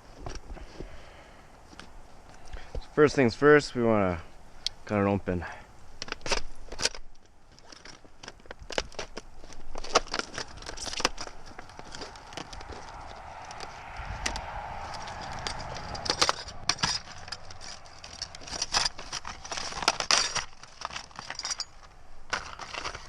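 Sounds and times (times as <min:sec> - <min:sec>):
plastic packaging cracking and snapping: 0:06.0 - 0:13.3, 0:16.6 - 0:23.0
scraping and rubbing: 0:06.0 - 0:23.0.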